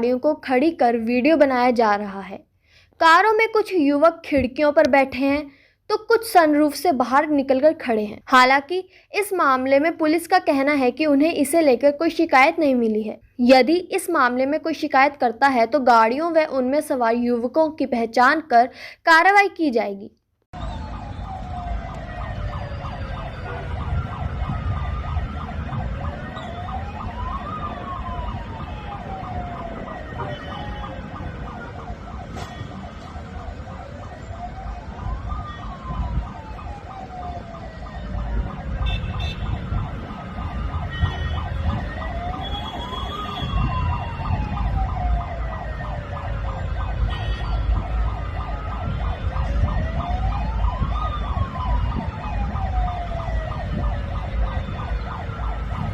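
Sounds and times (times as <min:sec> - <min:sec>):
sirens wailing: 0:20.6 - 0:55.9.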